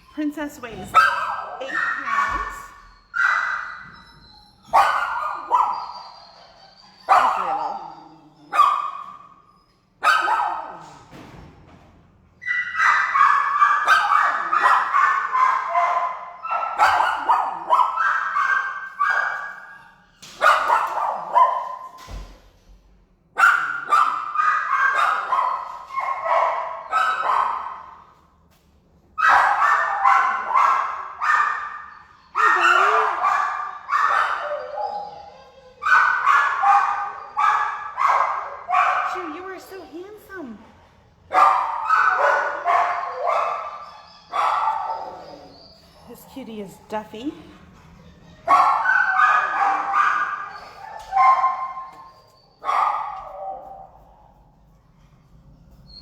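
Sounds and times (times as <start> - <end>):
dogs barking with echo: 0.9 - 3.8, 7.1 - 9.0, 10.0 - 10.8, 12.6 - 19.6, 29.2 - 35.2, 35.8 - 39.6, 41.3 - 45.6, 48.4 - 54.2.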